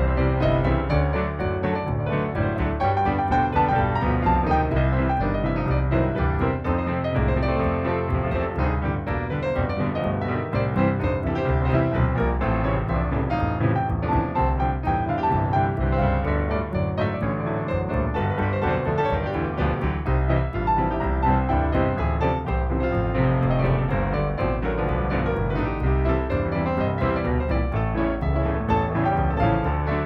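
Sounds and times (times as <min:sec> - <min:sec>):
piano instrumental music: 0:00.0 - 0:30.0
steady bass line: 0:00.0 - 0:30.0.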